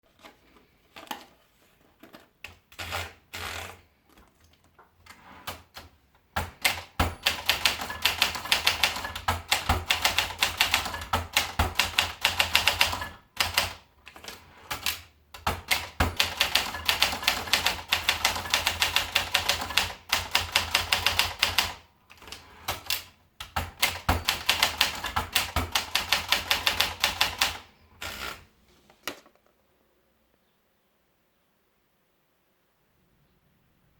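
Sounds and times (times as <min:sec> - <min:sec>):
manual typewriter typing: 0:02.4 - 0:04.2, 0:05.1 - 0:28.5.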